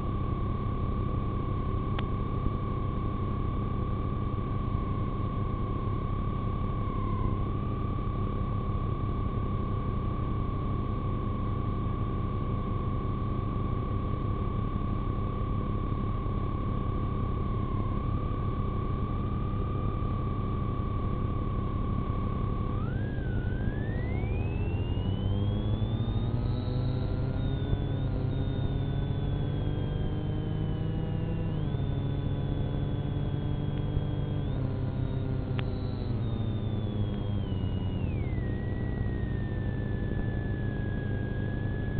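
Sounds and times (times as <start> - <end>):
constant low rumble: 12.4 - 41.9
steady high-pitched tone: 19.2 - 41.9.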